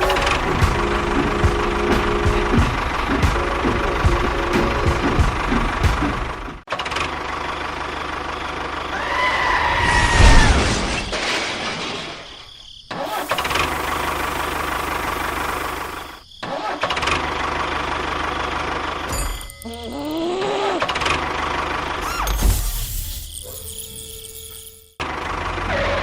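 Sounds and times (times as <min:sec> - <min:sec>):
engine whining tone: 0:00.0 - 0:06.3.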